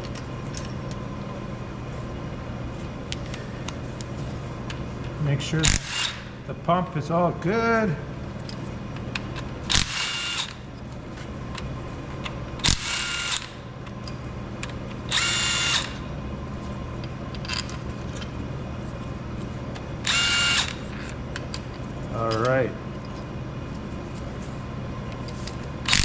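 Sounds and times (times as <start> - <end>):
steady low hum: 0.0 - 26.0
electric drill whining: 9.7 - 10.6, 12.7 - 13.5, 15.1 - 16.1, 20.0 - 20.9.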